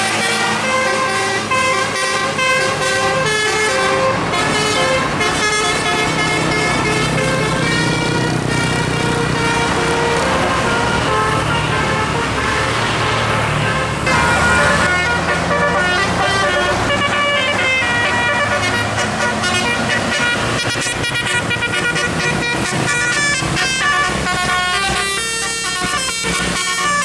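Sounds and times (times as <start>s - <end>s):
bus engine running: 0.0s - 27.0s
musical air horn melody: 0.0s - 27.0s.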